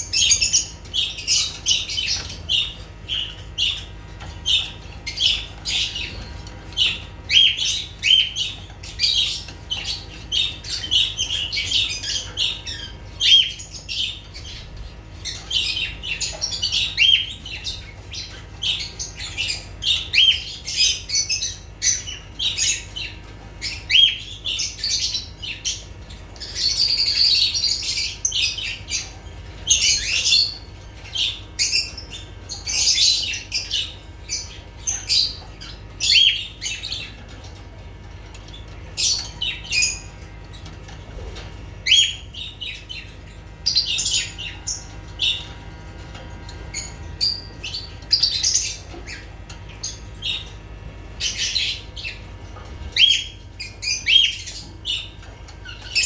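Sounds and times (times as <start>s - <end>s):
birds chirping: 0.0s - 56.0s
birds squawking harshly: 0.0s - 56.0s.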